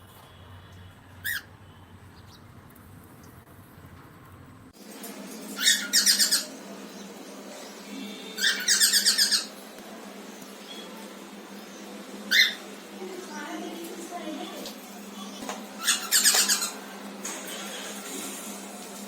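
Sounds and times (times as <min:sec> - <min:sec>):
parrot calling harshly: 0:05.6 - 0:06.6, 0:08.4 - 0:09.6, 0:12.3 - 0:12.7, 0:15.8 - 0:16.8.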